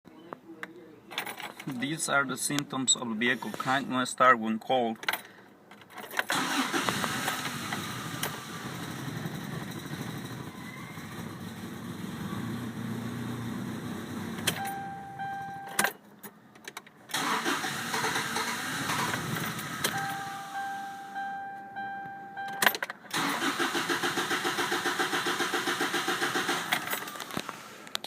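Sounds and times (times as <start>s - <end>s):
starter cranking engine: 6.3s - 10.3s, 17.1s - 20.0s, 23.1s - 27.6s.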